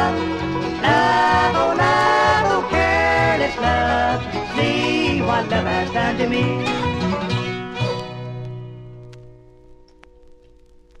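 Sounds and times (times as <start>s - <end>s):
faint clicks: 8.0s - 11.0s.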